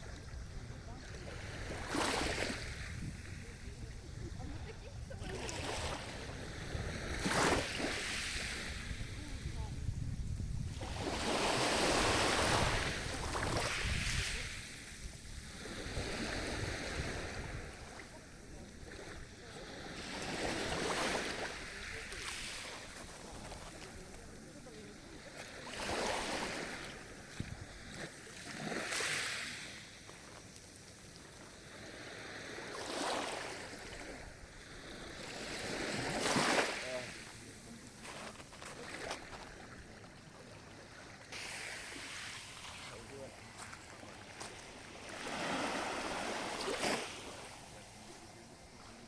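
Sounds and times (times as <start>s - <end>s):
wind rumbling on microphone: 0.0s - 19.4s
sea waves washing on shore: 0.0s - 49.0s.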